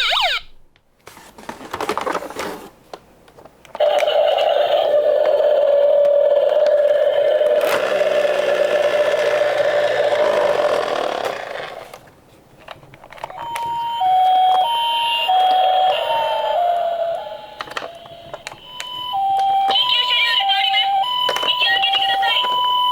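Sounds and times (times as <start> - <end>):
ambulance two-tone siren: 0.0 - 0.5, 13.3 - 22.9
noisy rolling sound: 3.8 - 22.9.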